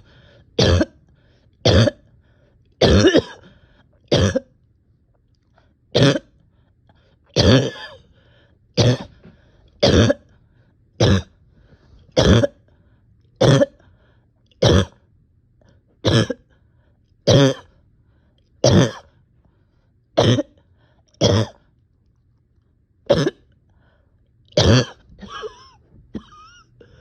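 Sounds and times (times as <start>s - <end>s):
person coughing: 0.6s - 1.0s, 1.7s - 2.0s, 2.8s - 4.5s, 6.0s - 6.3s, 7.4s - 8.1s, 8.8s - 10.3s, 12.2s - 12.6s, 13.4s - 13.8s, 16.0s - 16.4s, 17.3s - 17.7s, 18.6s - 19.1s, 20.2s - 20.6s, 21.2s - 21.6s, 23.1s - 23.5s, 24.6s - 27.0s.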